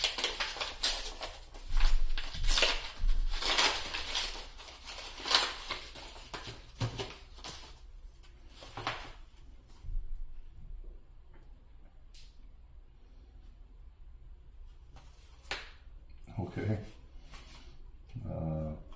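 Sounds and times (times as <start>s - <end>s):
foil wrappers crinkling: 0.0s - 7.8s
cards being handled: 0.0s - 9.2s, 14.9s - 15.8s.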